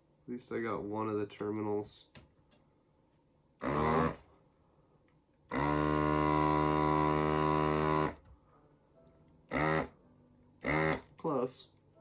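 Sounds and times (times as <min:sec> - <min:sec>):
desoldering pump buzzing hum: 0:03.6 - 0:04.2, 0:05.5 - 0:08.2, 0:09.5 - 0:09.9, 0:10.6 - 0:11.2.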